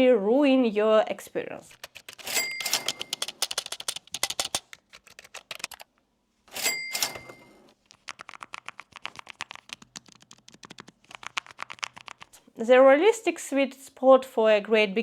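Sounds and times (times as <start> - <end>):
mechanical keyboard key clacks: 1.7 - 5.9, 7.9 - 12.3.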